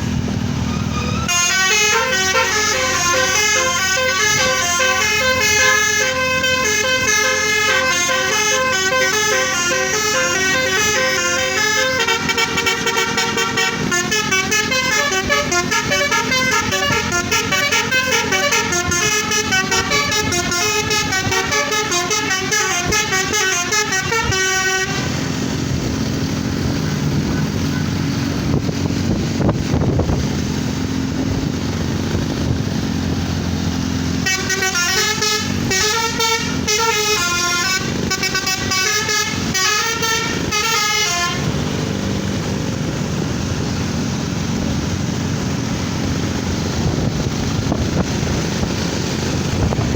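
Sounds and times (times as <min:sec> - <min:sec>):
vehicle engine and road noise: 0:00.0 - 0:49.9
bus horn playing a melody: 0:00.6 - 0:25.9, 0:26.7 - 0:28.6, 0:34.0 - 0:41.8.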